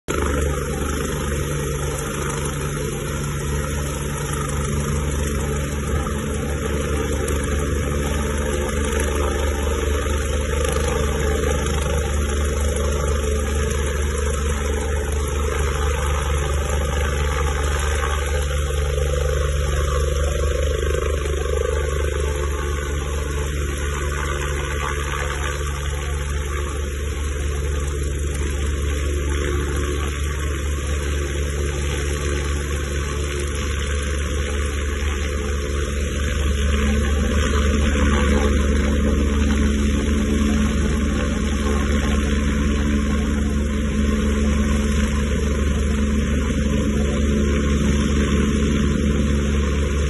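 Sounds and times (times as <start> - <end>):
helicopter engine and rotor drone: 0.0 - 50.0.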